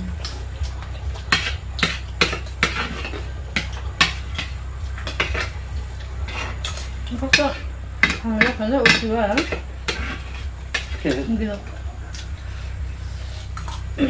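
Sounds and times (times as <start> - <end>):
steady low hum: 0.0 - 14.0
cutlery clinking on a dish: 1.2 - 5.6, 6.3 - 11.3.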